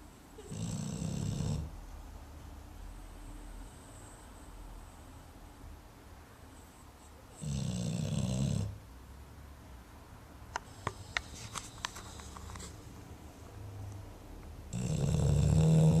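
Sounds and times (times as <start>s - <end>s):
loud snore: 0.4s - 1.7s, 7.4s - 8.8s, 14.7s - 16.0s.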